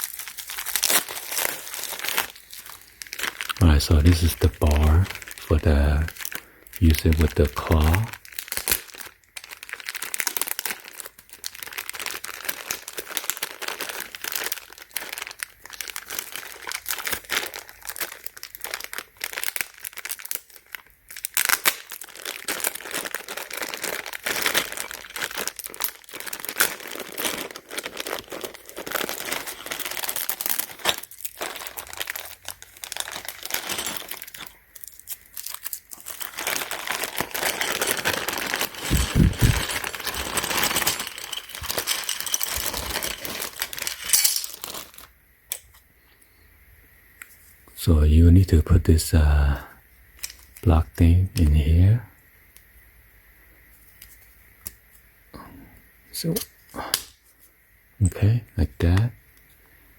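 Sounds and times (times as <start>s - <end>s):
plastic packaging crinkling: 0.0s - 45.8s, 50.1s - 50.6s.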